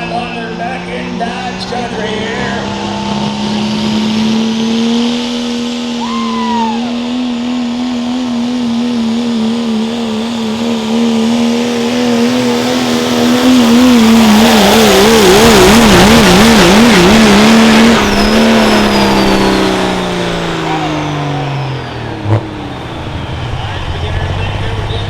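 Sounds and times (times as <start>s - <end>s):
diesel truck engine at full throttle: 0.0s - 25.0s.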